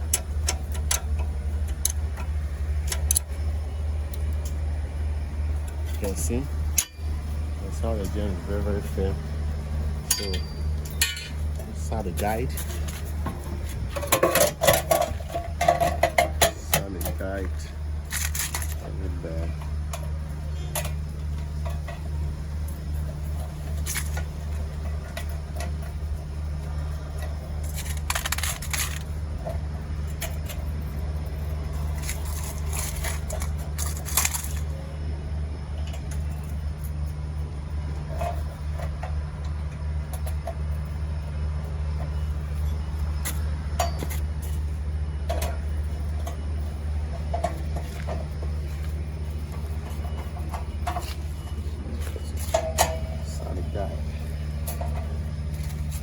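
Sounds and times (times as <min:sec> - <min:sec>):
steady low hum: 0:00.0 - 0:56.0
metal tools clinking and rattling: 0:05.7 - 0:09.2, 0:09.9 - 0:35.0, 0:35.7 - 0:56.0.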